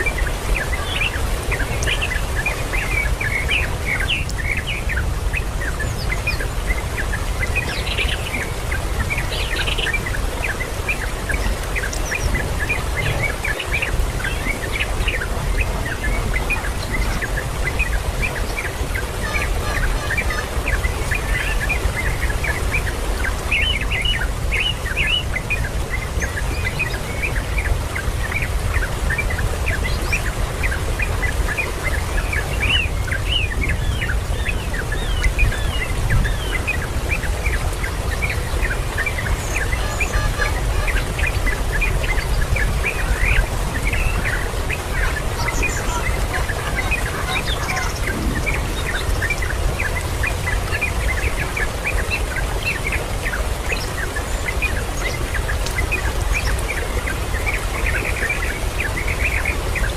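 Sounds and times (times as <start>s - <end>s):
birds chirping: 0.0s - 59.9s
steady low rumble: 47.8s - 49.8s.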